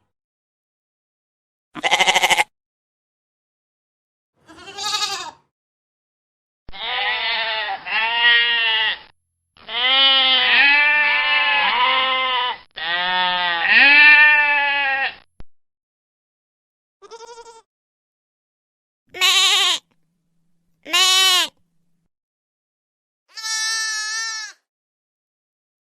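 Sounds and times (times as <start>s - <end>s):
goats bleating: 1.8s - 2.5s, 4.4s - 5.4s, 6.7s - 15.2s, 17.0s - 17.7s, 19.1s - 19.8s, 20.9s - 21.6s, 23.3s - 24.6s.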